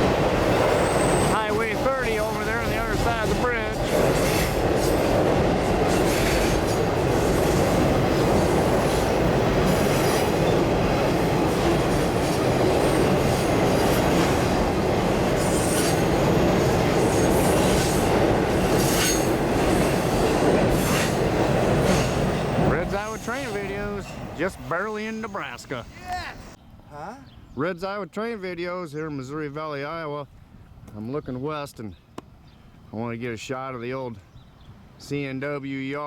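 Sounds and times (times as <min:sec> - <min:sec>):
road noise: 0:00.0 - 0:27.6.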